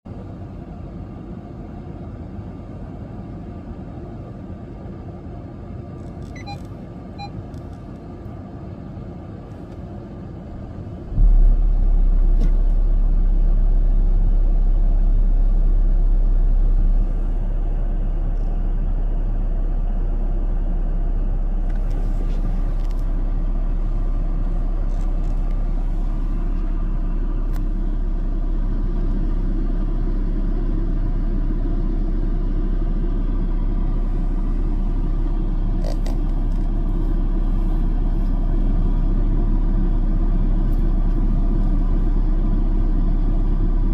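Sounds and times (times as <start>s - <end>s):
low rumble: 10.2s - 43.9s.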